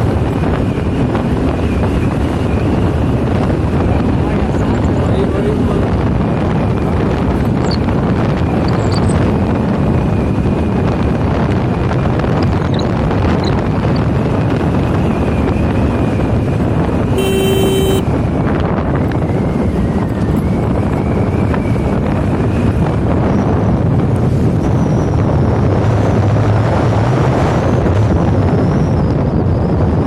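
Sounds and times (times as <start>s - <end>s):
wind buffeting microphone: 0.0s - 17.2s, 18.0s - 30.0s
short beep: 17.2s - 18.0s.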